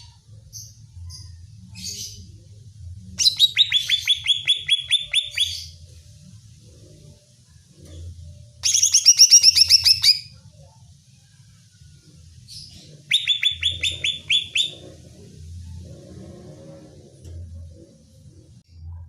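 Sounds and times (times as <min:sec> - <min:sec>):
low hum: 0:00.0 - 0:08.7, 0:09.6 - 0:19.0
bird calling sharp notes: 0:13.1 - 0:14.9.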